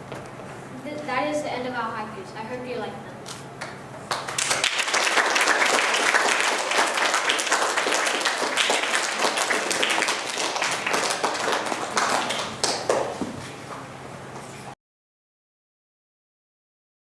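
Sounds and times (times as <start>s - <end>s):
audience applauding: 4.1s - 13.2s.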